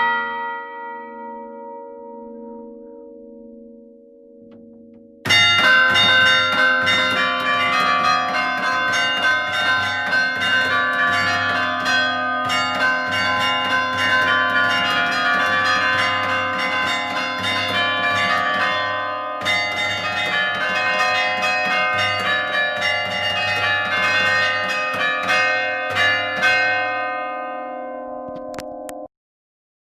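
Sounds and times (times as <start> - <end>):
bells pealing rapidly: 5.3 - 27.5.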